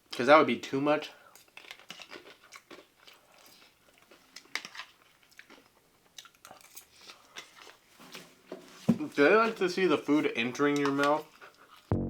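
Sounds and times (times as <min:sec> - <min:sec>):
chewing crunchy snack: 0:01.2 - 0:07.9, 0:10.0 - 0:11.9.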